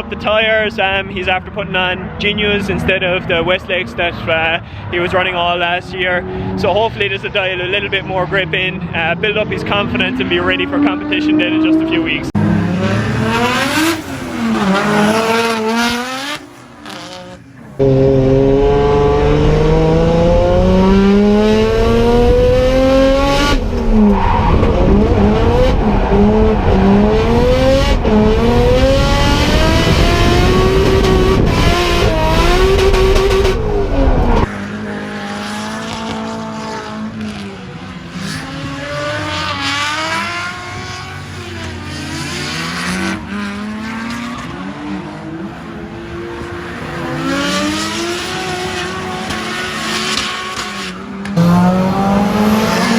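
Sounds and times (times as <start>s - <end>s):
car engine revving hard: 9.7s - 52.9s
tyres squealing: 12.4s - 17.8s.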